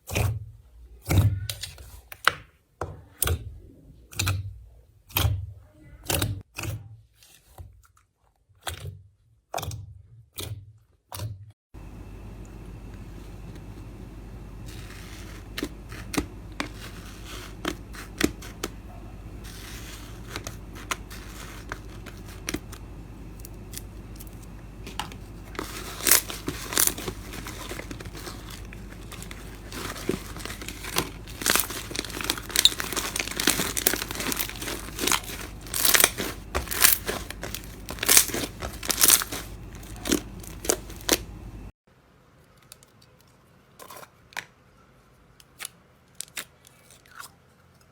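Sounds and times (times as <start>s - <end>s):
low steady hum: 11.8s - 41.7s
slime crackling and popping: 23.4s - 41.5s.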